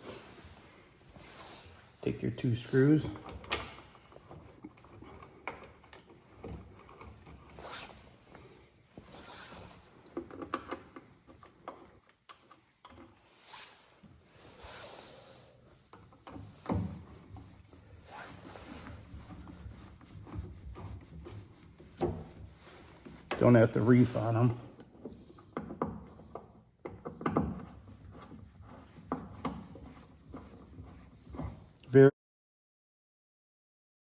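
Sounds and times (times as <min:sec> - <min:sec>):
screwdriver scraping and turning: 0:02.3 - 0:08.5, 0:09.1 - 0:13.5, 0:15.6 - 0:31.8.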